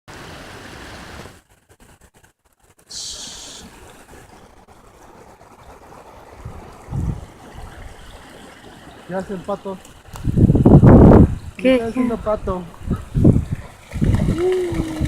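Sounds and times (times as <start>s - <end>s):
running water rushing: 0.1s - 15.0s
short high hiss: 2.9s - 3.9s.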